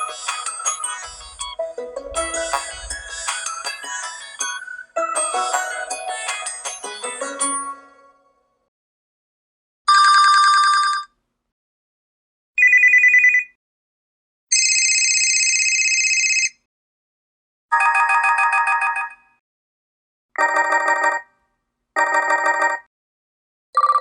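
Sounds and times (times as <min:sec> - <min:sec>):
trilling electronic phone rings: 0:12.6 - 0:13.5, 0:14.5 - 0:16.6, 0:20.4 - 0:21.3, 0:22.0 - 0:22.9, 0:23.8 - 0:24.0.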